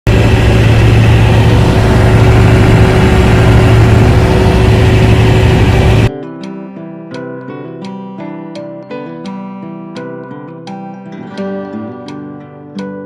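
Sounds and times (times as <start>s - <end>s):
diesel generator running: 0.1s - 6.1s
plucked guitar music: 0.1s - 13.0s.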